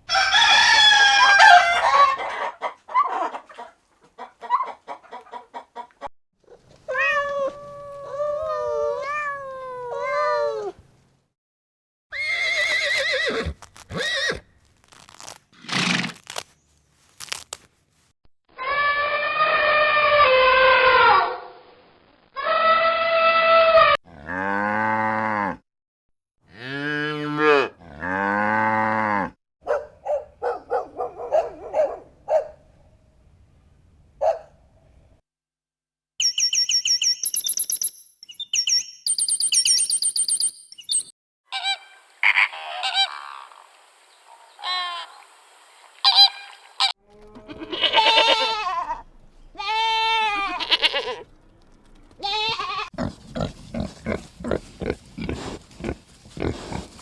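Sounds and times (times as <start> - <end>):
farm animal calls: 40.7 - 43.6, 52.2 - 57.0.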